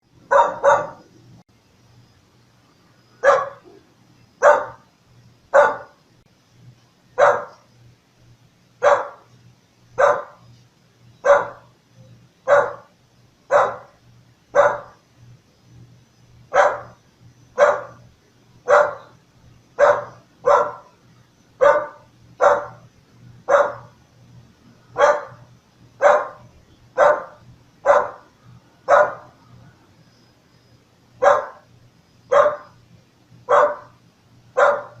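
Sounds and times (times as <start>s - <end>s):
dog barking: 0.3s - 1.1s, 3.2s - 3.8s, 4.4s - 4.8s, 5.5s - 6.0s, 7.2s - 7.6s, 8.8s - 9.3s, 10.0s - 10.5s, 11.2s - 11.7s, 12.4s - 12.9s, 13.5s - 15.0s, 16.5s - 17.0s, 17.6s - 18.0s, 18.6s - 19.2s, 19.8s - 21.0s, 21.6s - 22.9s, 23.5s - 24.0s, 25.0s - 28.3s, 28.9s - 29.4s, 31.2s - 31.7s, 32.3s - 32.8s, 33.5s - 34.0s, 34.6s - 35.0s.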